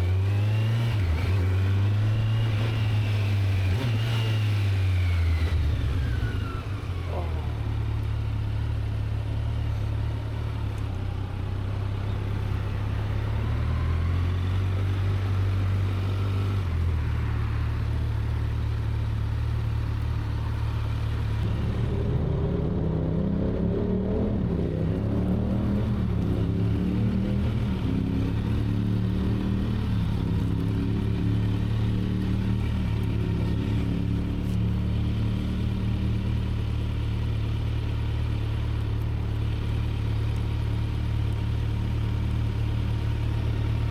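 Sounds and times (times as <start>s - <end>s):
motorcycle engine accelerating: 0.0s - 11.2s, 12.0s - 43.9s
steady low drone: 19.8s - 37.9s.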